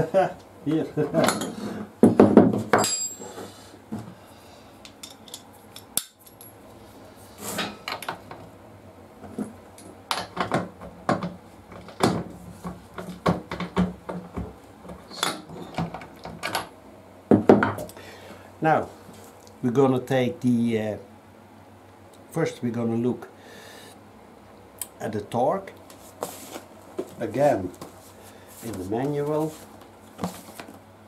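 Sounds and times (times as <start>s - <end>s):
metal tools clinking: 2.8s - 3.4s.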